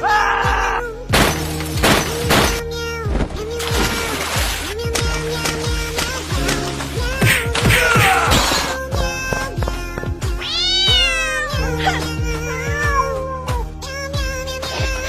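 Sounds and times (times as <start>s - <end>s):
background music with beat: 4.4s - 15.0s
cat meowing: 10.4s - 13.6s.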